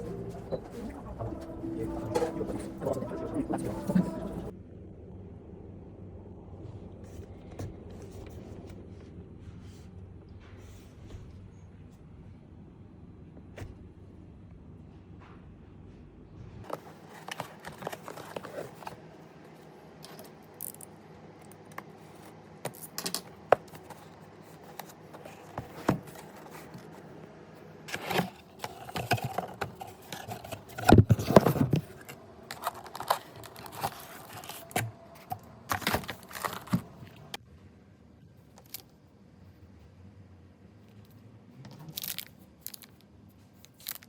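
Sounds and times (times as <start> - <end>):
packaging crinkling and tearing: 27.9 - 37.3, 41.8 - 43.0.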